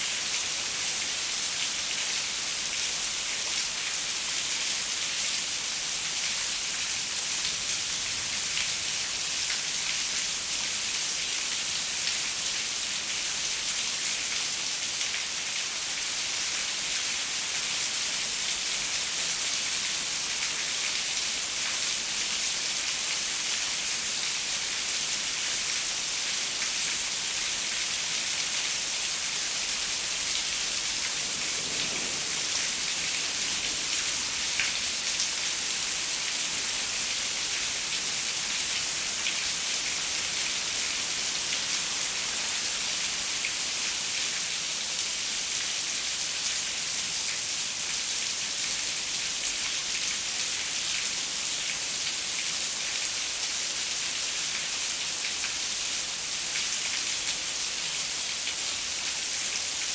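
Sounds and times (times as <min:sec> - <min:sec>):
rain on a window: 0:00.1 - 0:59.9.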